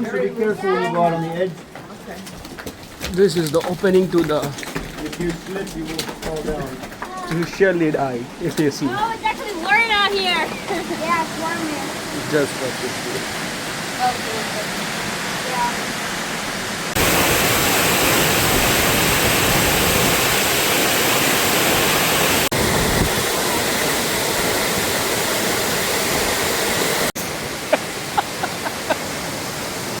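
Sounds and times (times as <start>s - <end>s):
waterfall rushing: 7.7s - 30.0s.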